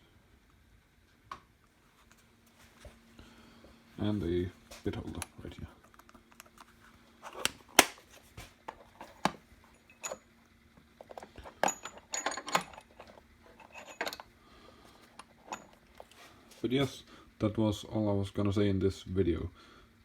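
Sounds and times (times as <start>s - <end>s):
steel bits clicking and clinking: 8.8s - 10.2s, 11.0s - 14.3s, 15.0s - 16.2s.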